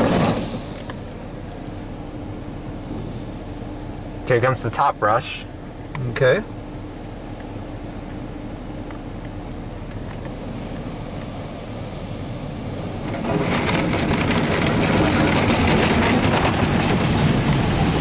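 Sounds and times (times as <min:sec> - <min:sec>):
car wash brushes scrubbing: 0:00.0 - 0:00.9, 0:12.9 - 0:18.0.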